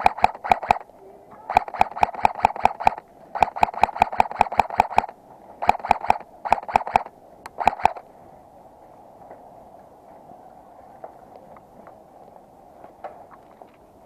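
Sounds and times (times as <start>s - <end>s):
airsoft gun rapid shots: 0.0s - 0.9s, 1.5s - 8.0s.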